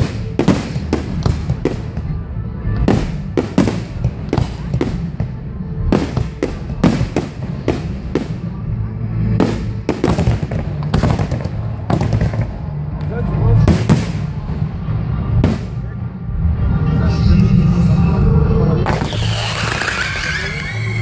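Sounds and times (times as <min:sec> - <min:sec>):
fireworks bangs: 0:00.0 - 0:02.2, 0:02.8 - 0:12.8, 0:13.6 - 0:15.9, 0:18.8 - 0:21.0
low rumble: 0:00.0 - 0:21.0.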